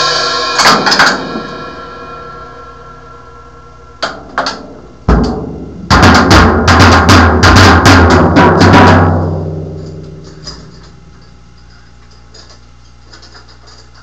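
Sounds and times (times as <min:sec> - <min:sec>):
drum kit playing: 0:00.0 - 0:11.4
low drum ringing: 0:00.0 - 0:11.6.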